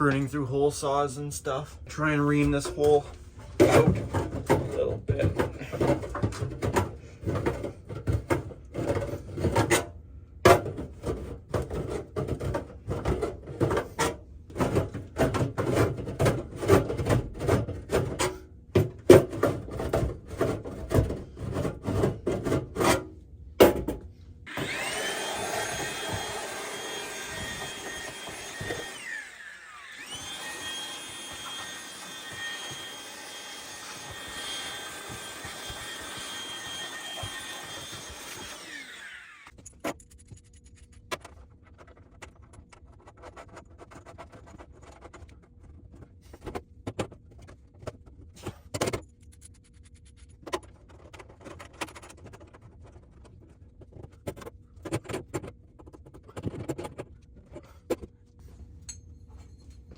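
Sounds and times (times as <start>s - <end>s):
power drill whining: 24.5s - 39.6s.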